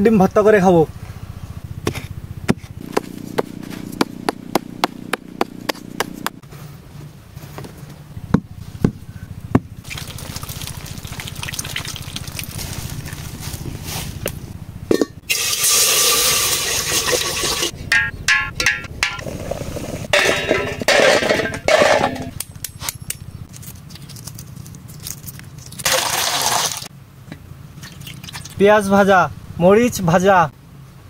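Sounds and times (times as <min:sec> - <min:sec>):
sharp taps and knocks: 0:01.8 - 0:06.4
watery noise: 0:09.8 - 0:13.2, 0:27.8 - 0:28.6.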